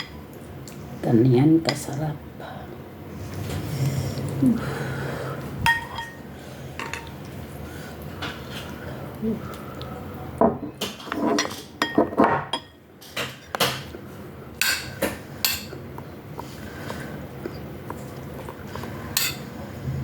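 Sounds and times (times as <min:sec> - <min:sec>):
cutlery clinking on a dish: 0:19.2 - 0:19.5.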